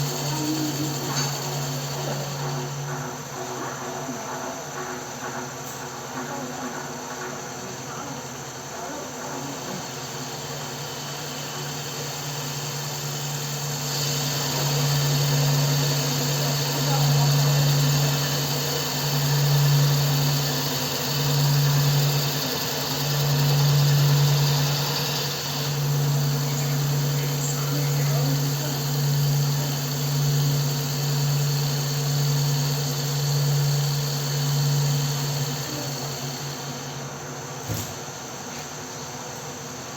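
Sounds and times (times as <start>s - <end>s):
lathe tool cutting wood: 0.0s - 2.8s, 9.5s - 37.0s
lathe motor hum: 0.0s - 6.2s, 6.8s - 37.6s.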